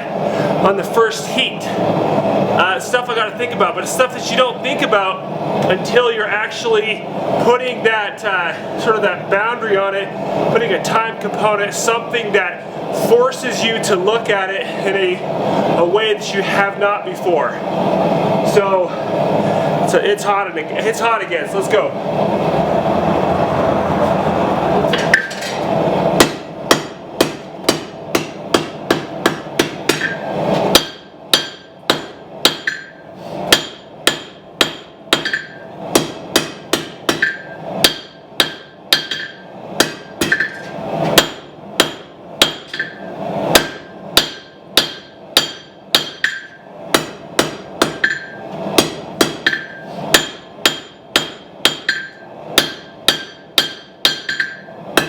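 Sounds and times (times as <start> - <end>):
steady rushing noise: 0.0 - 55.0
hammer blows ringing on anvil: 26.2 - 54.7.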